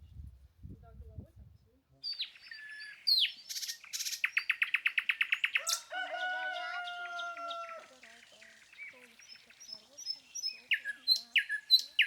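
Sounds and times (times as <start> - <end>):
songbirds chirping: 1.7 - 12.0
long steady-pitched bird call: 2.0 - 12.0
fast bird trill: 6.8 - 12.0.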